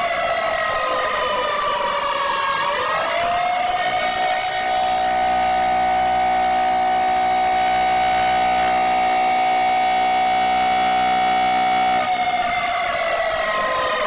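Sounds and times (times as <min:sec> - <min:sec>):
alarm siren steady high tone: 0:00.0 - 0:14.0
fainter steady lower tones: 0:03.3 - 0:14.0.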